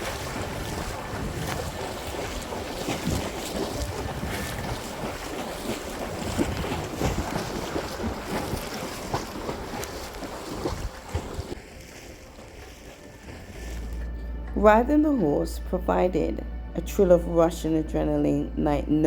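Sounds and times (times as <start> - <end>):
wind buffeting microphone: 0.0 - 14.2
seawater splashing: 0.0 - 16.3.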